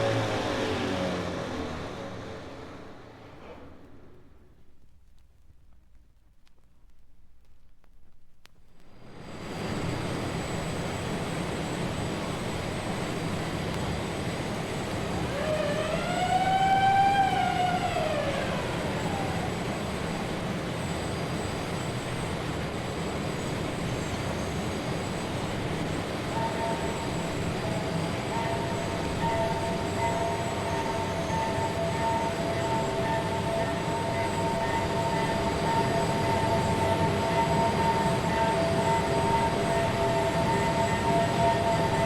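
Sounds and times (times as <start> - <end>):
rising and falling wail: 0.0 - 3.3, 15.1 - 19.9, 26.4 - 42.0
vehicle rumble: 0.0 - 5.2
steady tones: 25.7 - 42.0.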